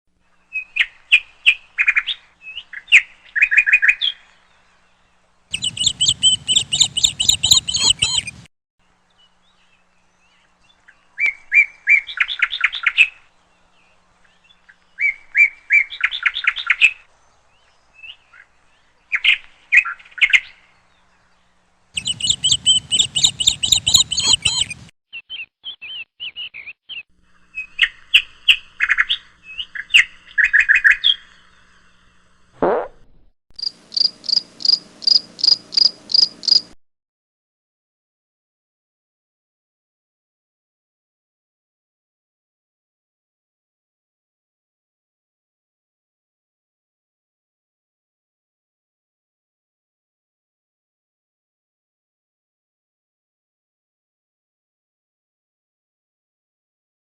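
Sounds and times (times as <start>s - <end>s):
parrots chirping: 5.5s - 8.5s, 22.0s - 24.9s.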